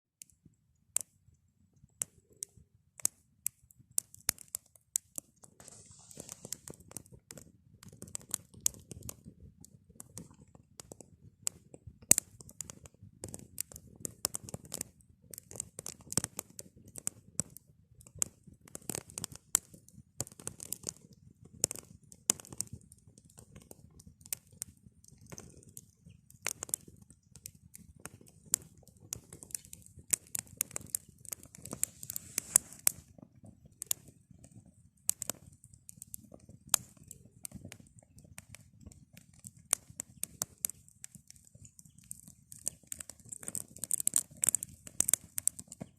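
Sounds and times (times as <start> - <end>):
campfire crackling: 0.2 - 45.9
fire popping and snapping: 0.2 - 45.9
flames rushing: 5.6 - 7.0, 26.4 - 33.1.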